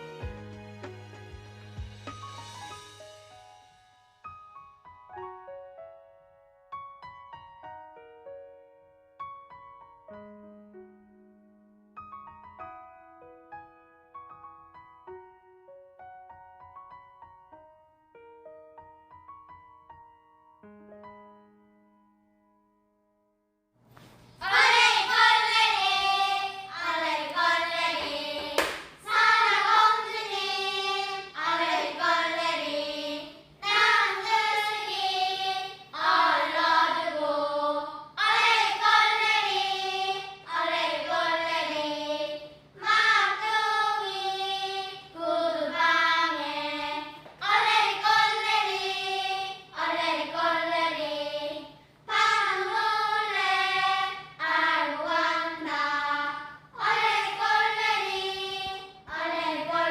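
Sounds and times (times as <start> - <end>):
high voices singing slow song: 24.4 - 59.9.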